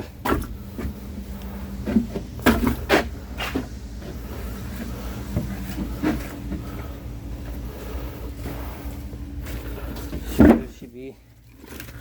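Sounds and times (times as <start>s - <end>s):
steady low hum: 0.0s - 12.0s
firewood knocking down: 1.9s - 3.1s, 10.1s - 10.8s.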